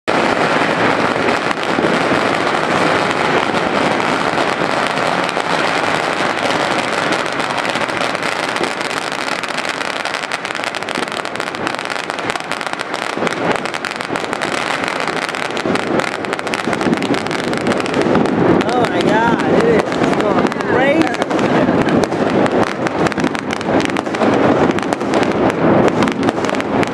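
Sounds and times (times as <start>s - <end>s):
firecrackers crackling: 0.1s - 26.9s.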